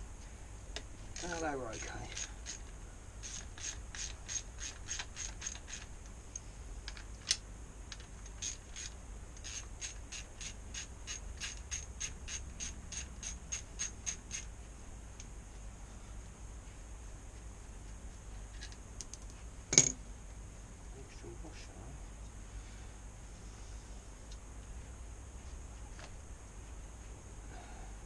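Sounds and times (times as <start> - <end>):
socket ratchet clicking: 2.1 - 5.9, 6.9 - 14.5.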